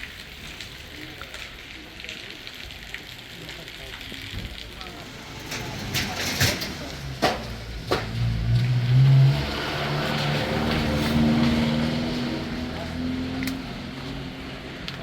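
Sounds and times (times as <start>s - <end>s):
car engine accelerating: 4.8s - 14.9s.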